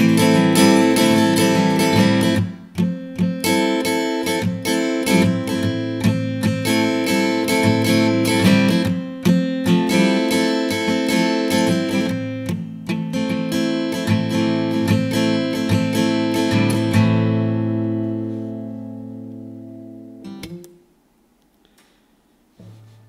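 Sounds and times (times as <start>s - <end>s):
acoustic guitar strumming: 0.0s - 21.0s, 22.5s - 23.0s.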